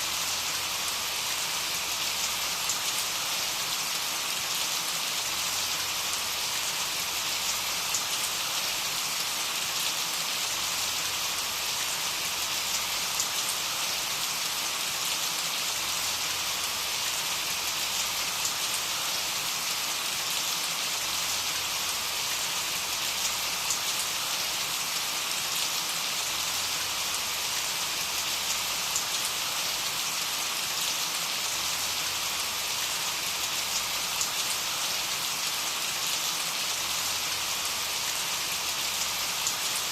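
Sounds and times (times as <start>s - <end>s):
rain hissing on a surface: 0.0s - 39.9s.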